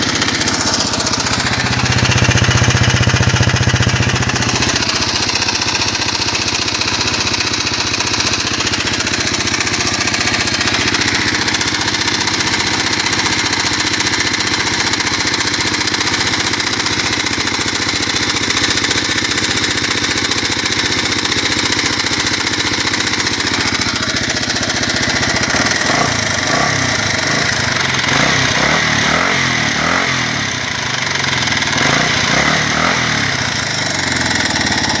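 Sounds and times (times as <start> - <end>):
motorcycle engine ticking: 0.0 - 35.0.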